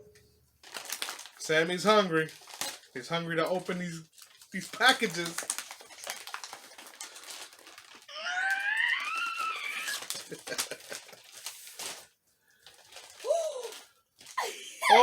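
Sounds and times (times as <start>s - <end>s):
toy packaging being torn open: 0.6s - 1.4s, 2.3s - 3.0s, 3.6s - 14.4s
high rising squeal-like cry: 8.1s - 10.1s.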